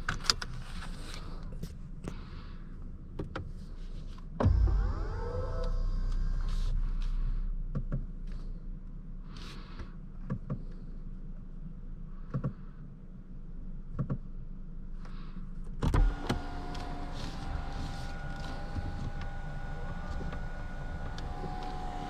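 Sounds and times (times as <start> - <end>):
road rumble in car cabin: 0.0 - 22.0
steady tones: 4.4 - 8.3.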